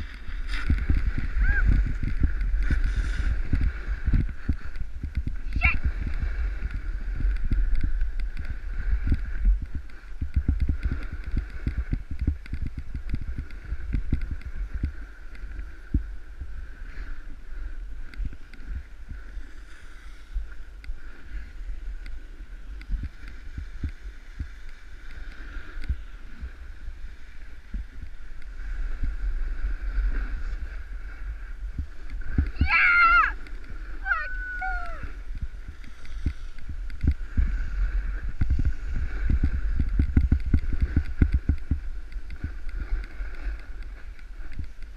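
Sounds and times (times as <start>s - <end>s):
snowboard scraping over snow: 0.0s - 16.2s, 18.3s - 44.9s.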